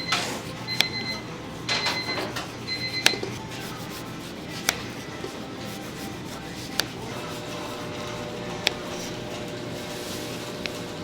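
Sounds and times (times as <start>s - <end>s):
kitchen utensils clicking and knocking: 0.0s - 3.4s
light music: 0.0s - 11.0s.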